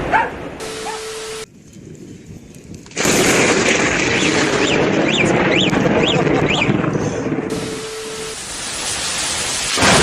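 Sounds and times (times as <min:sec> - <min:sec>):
hiss of storm noise: 0:01.9 - 0:10.0
thunder crack: 0:02.9 - 0:10.0.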